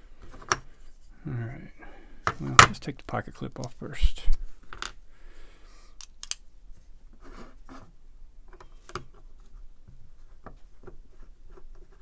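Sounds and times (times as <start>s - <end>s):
screwdriver metallic clicks: 6.0s - 6.4s.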